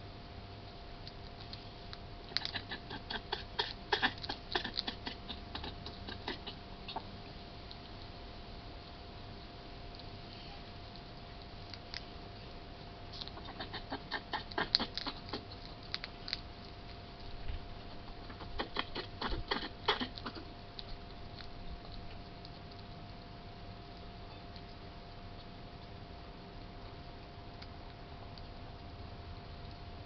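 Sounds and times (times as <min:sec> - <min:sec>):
hedgehog clicking: 0:02.3 - 0:07.0, 0:13.1 - 0:17.3, 0:17.9 - 0:22.9.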